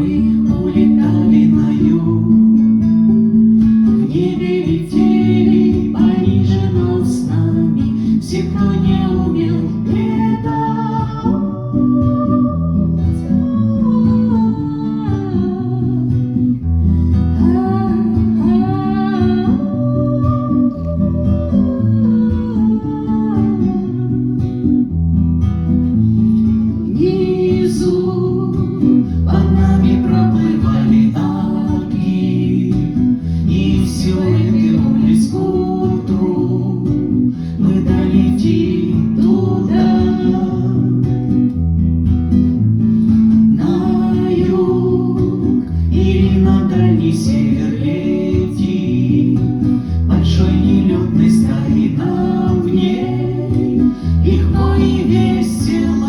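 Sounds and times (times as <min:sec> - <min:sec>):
acoustic guitar: 0:00.0 - 0:56.0
bass line: 0:00.0 - 0:56.0.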